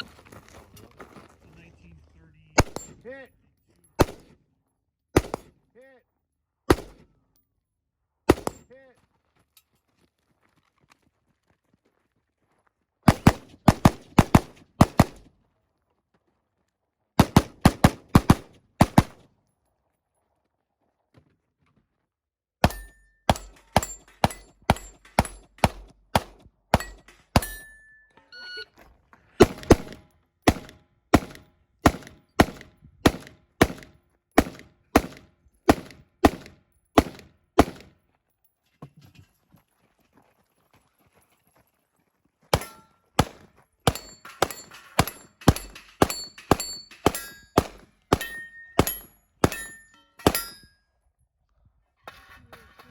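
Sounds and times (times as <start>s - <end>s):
rifle gunshots: 2.6s - 3.0s, 4.0s - 4.3s, 5.2s - 5.5s, 6.7s - 7.0s, 8.3s - 8.6s, 13.1s - 15.3s, 17.2s - 19.2s, 22.6s - 27.6s, 29.4s - 37.9s, 42.6s - 50.6s.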